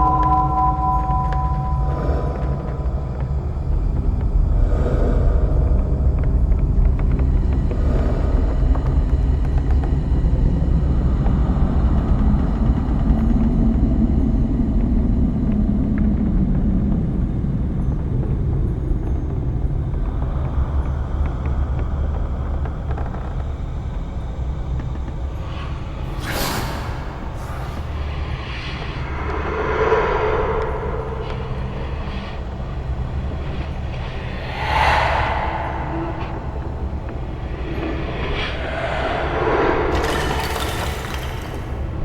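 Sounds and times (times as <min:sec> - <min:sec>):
deep rumbling drone: 0:00.0 - 0:42.0
loud rush of noise: 0:34.2 - 0:37.6.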